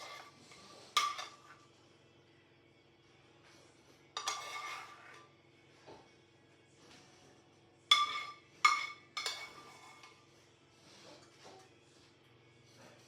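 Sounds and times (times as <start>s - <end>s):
dishes clinking: 0.9s - 1.6s, 4.2s - 5.3s, 7.9s - 10.2s.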